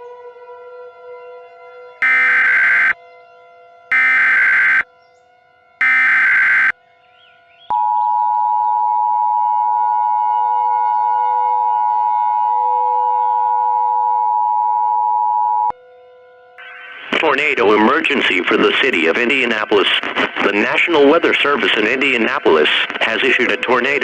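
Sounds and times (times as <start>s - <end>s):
electronic data screech: 2.0s - 3.0s, 3.9s - 4.8s, 5.8s - 6.7s
two-tone alert signal: 2.0s - 3.0s, 5.8s - 6.7s.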